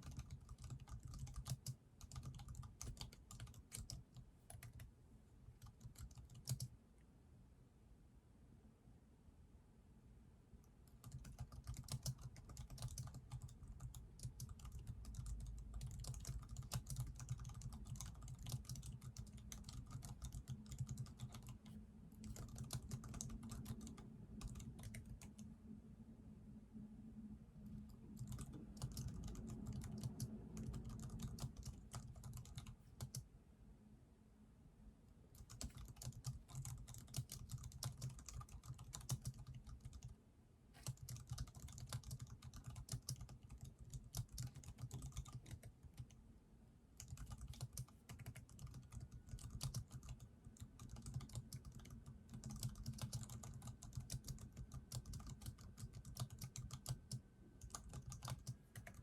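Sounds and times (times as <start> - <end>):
keyboard typing: 0.0 - 4.9, 5.5 - 6.7, 10.9 - 25.4, 27.7 - 33.2, 35.3 - 40.1, 40.8 - 46.2, 47.0 - 59.0.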